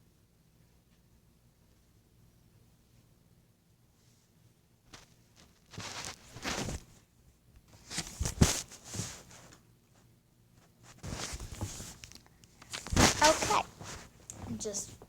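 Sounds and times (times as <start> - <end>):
rustling and shuffling: 3.9 - 15.0.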